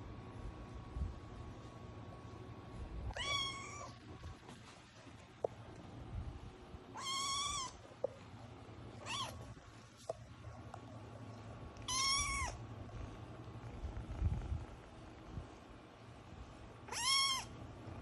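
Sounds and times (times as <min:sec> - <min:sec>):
kitten meowing: 0:03.1 - 0:03.9, 0:07.0 - 0:07.8, 0:09.0 - 0:09.4, 0:11.8 - 0:12.6, 0:16.9 - 0:17.5.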